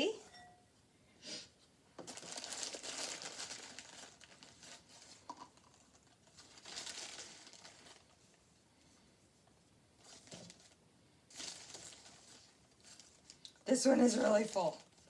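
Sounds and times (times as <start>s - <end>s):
plastic bag crinkling: 2.0s - 8.3s, 10.0s - 15.0s.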